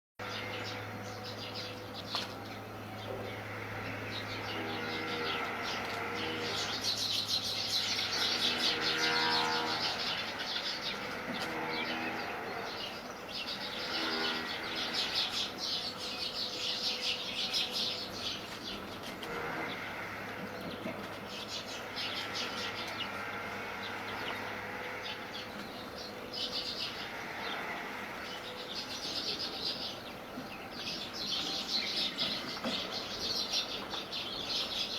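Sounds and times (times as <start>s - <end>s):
small birds chirping: 0.2s - 34.9s
steady low hum: 0.2s - 34.9s.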